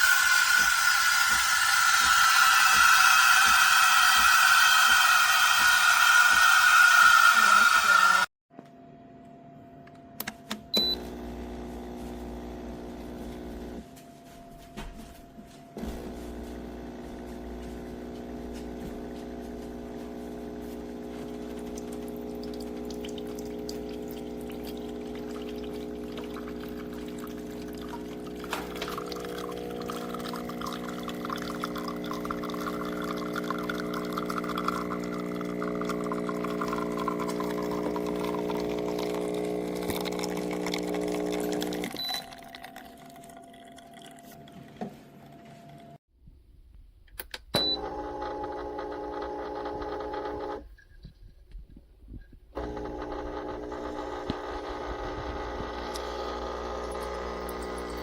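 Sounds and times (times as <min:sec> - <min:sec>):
espresso machine pump buzzing: 0:00.0 - 0:08.3, 0:10.8 - 0:13.8, 0:15.8 - 0:42.0, 0:47.7 - 0:50.6, 0:52.6 - 0:58.0
liquid trickling: 0:21.2 - 0:44.5, 0:56.7 - 0:58.0.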